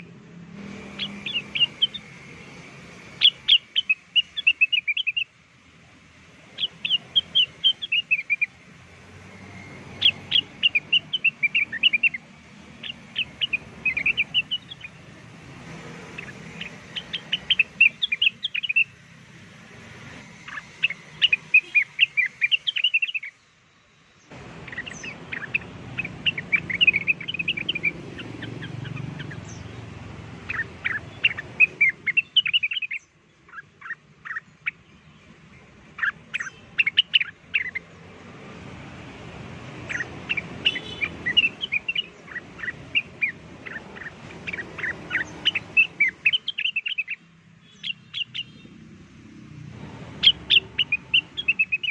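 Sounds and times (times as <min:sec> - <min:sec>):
bird chirps and whistles: 0:00.7 - 0:02.3, 0:03.1 - 0:05.3, 0:06.5 - 0:08.5, 0:09.5 - 0:15.0, 0:16.1 - 0:19.0, 0:20.4 - 0:23.4, 0:24.7 - 0:29.8, 0:30.4 - 0:34.8, 0:39.9 - 0:48.6, 0:50.2 - 0:51.9.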